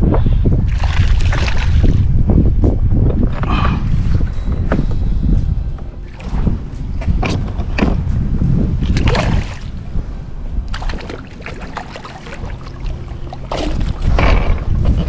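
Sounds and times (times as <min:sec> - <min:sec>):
steady low rumble: 0:00.0 - 0:15.0
fish splashing in water: 0:00.7 - 0:02.1, 0:10.7 - 0:15.0.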